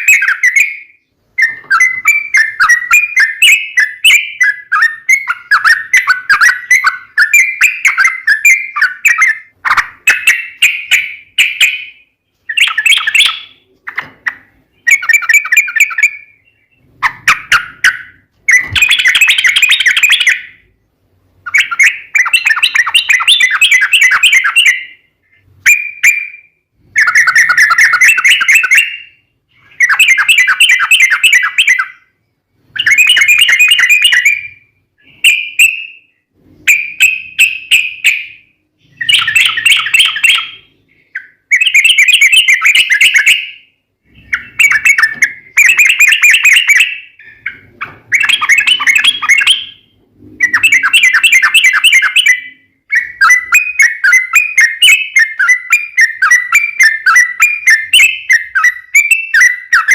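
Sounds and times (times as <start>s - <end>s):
bird singing chattering phrases: 0.0s - 20.7s, 36.7s - 59.9s.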